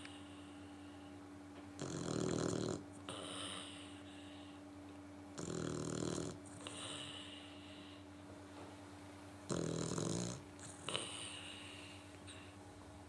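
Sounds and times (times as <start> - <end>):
puppy snoring: 1.8 - 4.5, 5.3 - 7.8, 9.5 - 12.5
soft hissing breath: 3.1 - 4.7, 6.5 - 8.2, 10.7 - 12.7.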